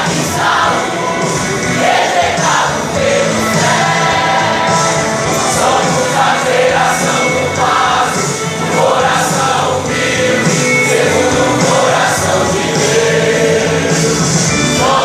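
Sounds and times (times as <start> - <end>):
band with drums and cymbals: 0.0 - 15.0
choir singing: 0.0 - 15.0.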